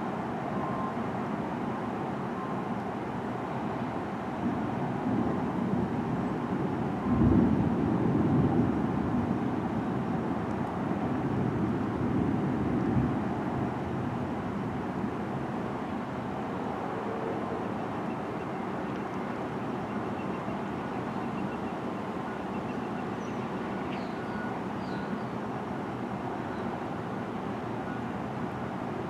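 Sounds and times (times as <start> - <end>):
thunder rumbling: 4.4 - 10.4.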